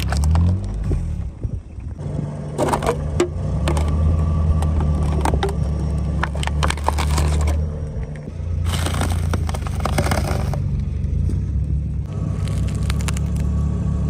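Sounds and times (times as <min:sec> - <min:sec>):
tyre crushing brittle objects: 0:00.0 - 0:00.8, 0:04.6 - 0:07.7, 0:08.6 - 0:10.7, 0:12.1 - 0:13.6
car engine running: 0:00.0 - 0:14.0.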